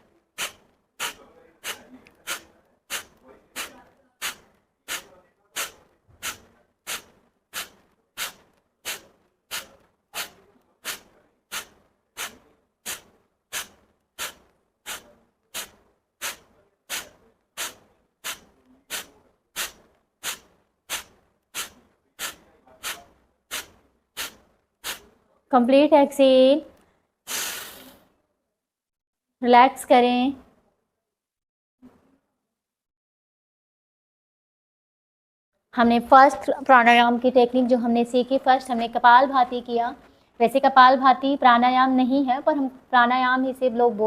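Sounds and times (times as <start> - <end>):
sharp nasal exhalations: 0.4 - 25.1, 27.2 - 28.1.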